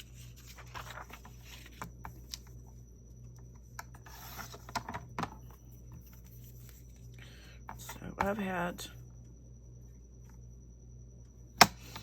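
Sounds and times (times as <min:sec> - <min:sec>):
paper rustling: 0:00.0 - 0:02.5.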